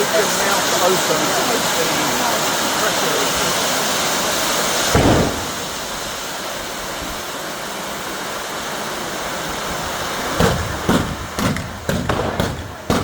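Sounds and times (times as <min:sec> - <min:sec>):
firework rushing hiss: 0:00.0 - 0:13.0
firework bangs: 0:03.7 - 0:07.3, 0:10.3 - 0:13.0.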